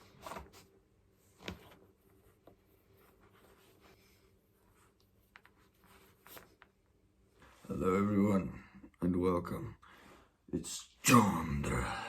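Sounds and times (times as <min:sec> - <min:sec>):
faint rustles and soft knocks: 0:00.0 - 0:07.7.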